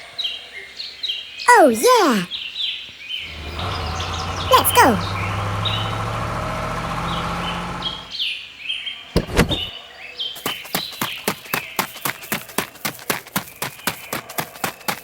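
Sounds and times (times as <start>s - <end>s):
birds chirping: 1.7s - 8.2s, 9.2s - 9.7s
vehicle engine running: 3.2s - 8.1s, 9.2s - 9.7s.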